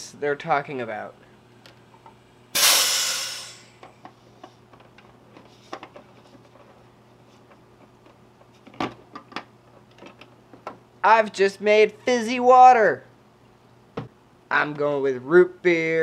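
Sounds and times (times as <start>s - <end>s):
soda maker venting hiss: 2.5s - 4.3s.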